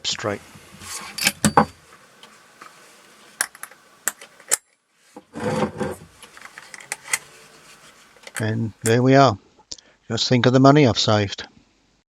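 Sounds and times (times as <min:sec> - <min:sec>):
rustling handling noise: 0:00.2 - 0:08.9.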